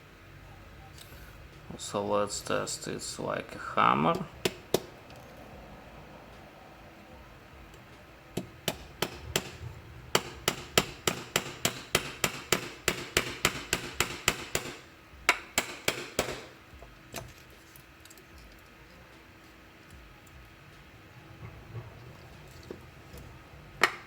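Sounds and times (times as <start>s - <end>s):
small hammer striking: 4.1s - 4.9s, 8.4s - 17.3s, 23.8s - 24.0s.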